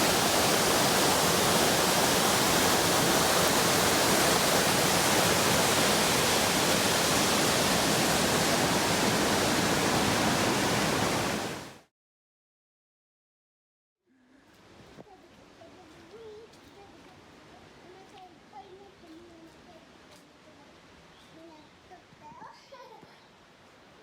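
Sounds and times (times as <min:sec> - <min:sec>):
waterfall rushing: 0:00.0 - 0:11.8.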